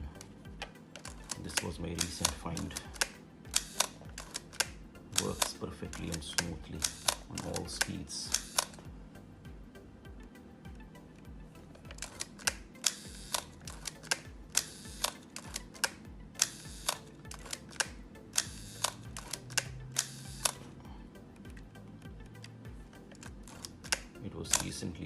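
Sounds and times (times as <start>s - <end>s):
film advance winding: 0.0s - 8.8s, 11.7s - 24.8s
camera shutter clicking: 1.0s - 8.8s, 11.8s - 20.8s, 22.4s - 24.8s.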